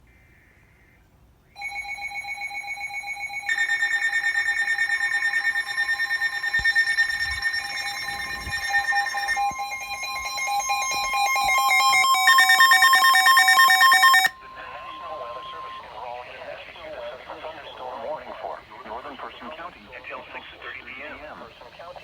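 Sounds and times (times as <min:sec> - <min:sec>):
higher-pitched alarm beeping: 0:01.6 - 0:17.1
weather alert radio alarm beeping: 0:01.6 - 0:22.0.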